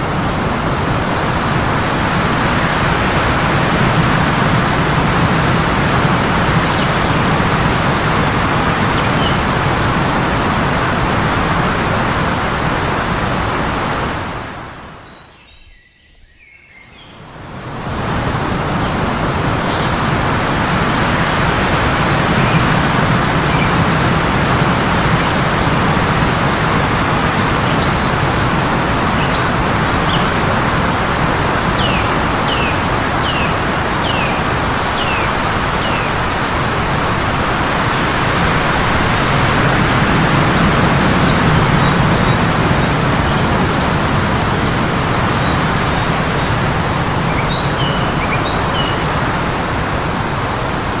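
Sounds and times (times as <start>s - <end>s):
heavy blizzard wind: 0.0s - 15.0s, 17.2s - 51.0s
small birds chirping: 6.0s - 10.8s, 18.8s - 49.2s.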